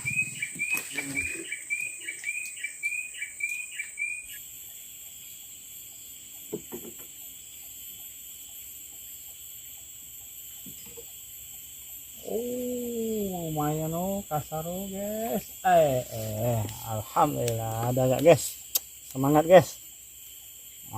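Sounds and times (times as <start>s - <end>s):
insects droning: 0.0s - 20.9s
repeated chirping call: 0.0s - 20.9s.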